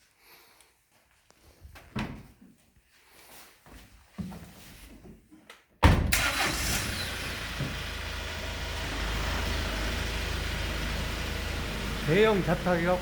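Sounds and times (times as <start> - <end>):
engine starting and idling: 6.1 - 13.0.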